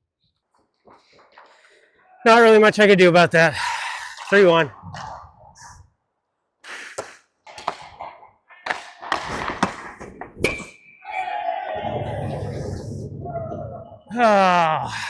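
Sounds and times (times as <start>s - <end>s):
skates scraping ice: 6.7s - 10.8s
sticks and puck knocking: 7.0s - 10.4s.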